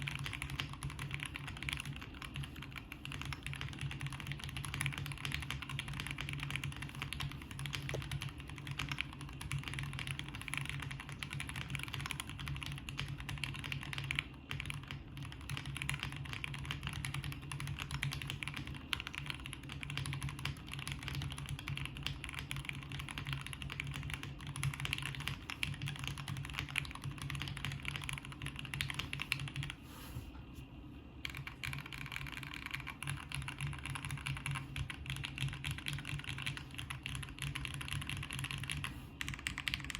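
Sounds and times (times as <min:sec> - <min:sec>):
mechanical keyboard typing: 0:00.0 - 0:29.8, 0:31.2 - 0:39.9.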